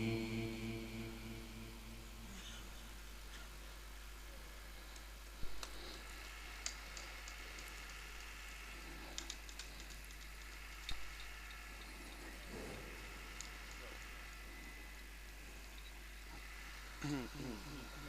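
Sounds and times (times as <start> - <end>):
faint room hum: 0.0 - 18.0
small clicks and knocks: 4.9 - 13.9.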